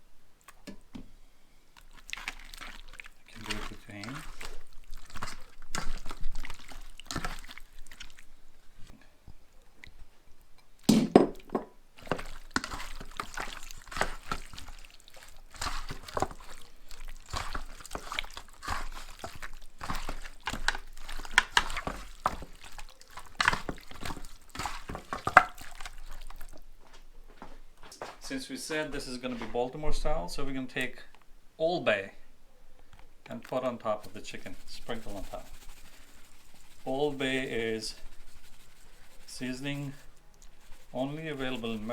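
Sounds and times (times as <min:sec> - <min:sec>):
wet squelching of chicken in marinade: 0:01.7 - 0:09.0, 0:11.9 - 0:26.8, 0:33.3 - 0:41.9.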